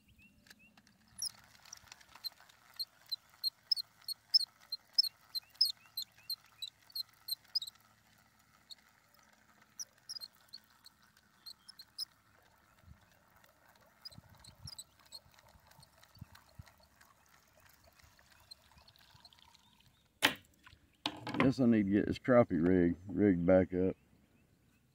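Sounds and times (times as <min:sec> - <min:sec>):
high-pitched chirping calls: 0:01.2 - 0:07.8, 0:09.8 - 0:12.1, 0:14.0 - 0:16.5.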